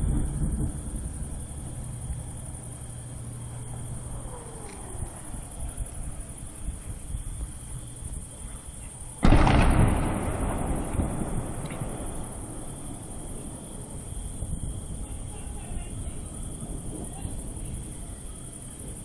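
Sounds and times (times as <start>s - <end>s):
crickets chirring: 0.0s - 19.0s
artillery shell whistling: 9.1s - 18.9s
shell blast rumbling: 9.2s - 18.0s.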